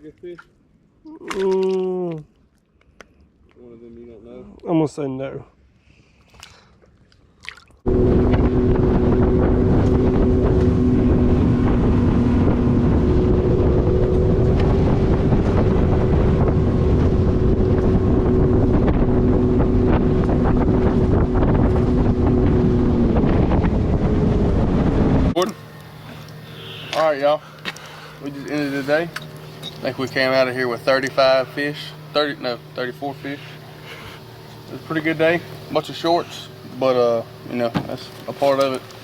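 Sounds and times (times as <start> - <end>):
boat motor running: 7.8 - 39.0
wind buffeting microphone: 7.9 - 25.4.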